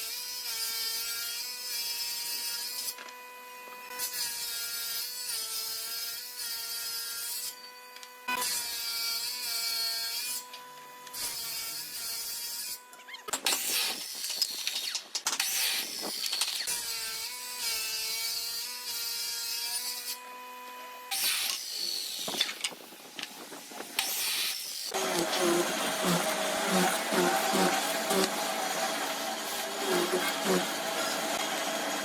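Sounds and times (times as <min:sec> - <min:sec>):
power tool whining: 0:19.8 - 0:32.0
rough rasping cutting: 0:24.0 - 0:32.0.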